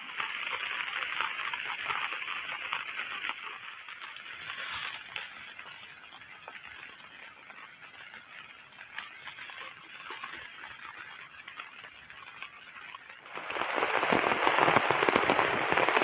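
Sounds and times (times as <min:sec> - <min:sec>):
heavy rain pattering: 0:13.2 - 0:16.0.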